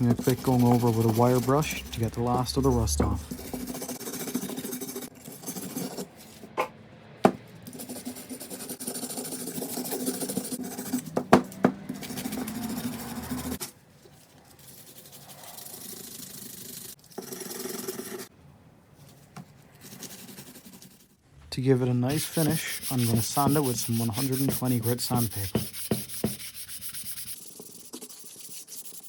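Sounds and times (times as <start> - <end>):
wire brush scrubbing metal: 0.0 - 5.8, 22.1 - 27.4.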